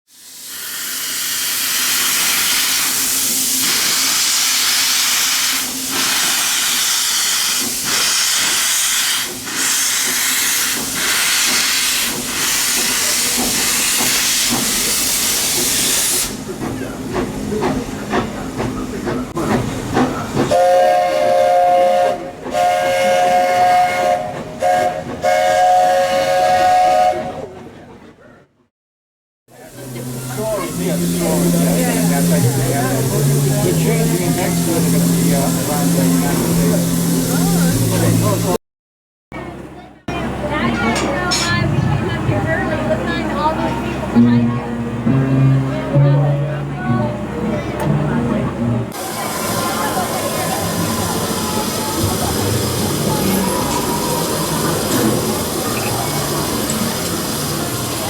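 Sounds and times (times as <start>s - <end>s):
hiss of escaping steam: 0.1s - 16.5s, 29.6s - 38.6s, 49.0s - 58.0s
steam whistle chord: 29.7s - 38.6s.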